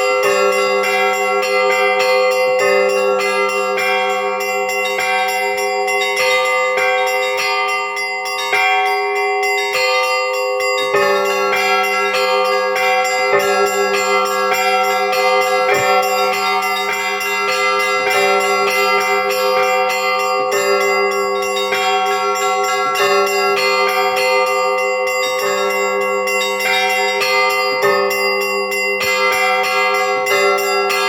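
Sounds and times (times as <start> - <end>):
large bells ringing: 0.0 - 31.0
small church bells struck quickly: 0.0 - 31.0
heavy bell stroke: 11.9 - 25.2.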